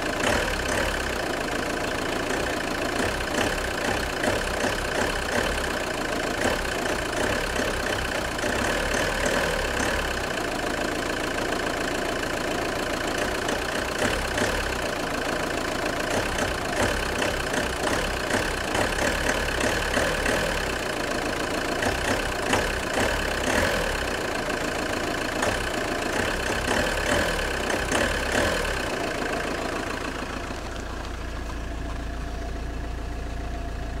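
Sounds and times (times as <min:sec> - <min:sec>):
diesel engine idling: 0:00.0 - 0:34.0.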